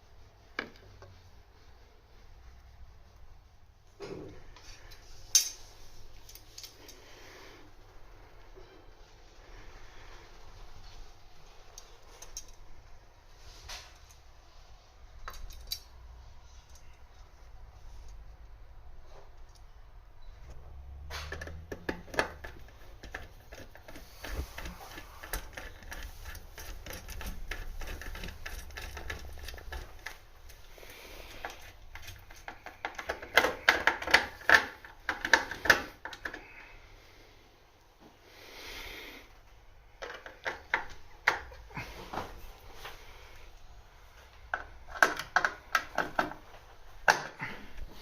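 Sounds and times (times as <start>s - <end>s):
hard objects clattering and knocking: 31.3s - 36.6s, 40.0s - 42.4s.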